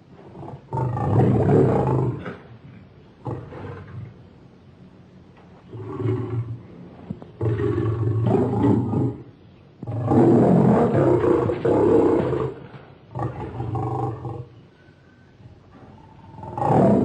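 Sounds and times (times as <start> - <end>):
lion roaring: 0.3 - 2.5, 3.2 - 4.2, 5.7 - 6.6, 7.4 - 14.5, 15.9 - 17.0.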